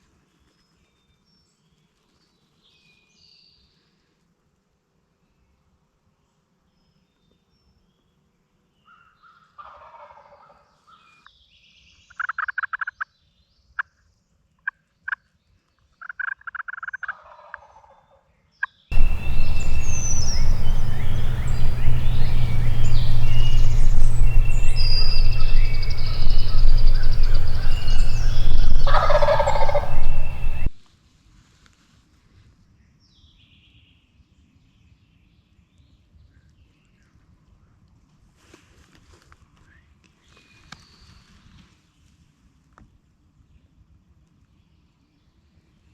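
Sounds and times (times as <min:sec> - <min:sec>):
turkey gobbling: 0:18.9 - 0:30.7
low steady rumble: 0:18.9 - 0:30.8
songbirds chirping: 0:18.9 - 0:30.8.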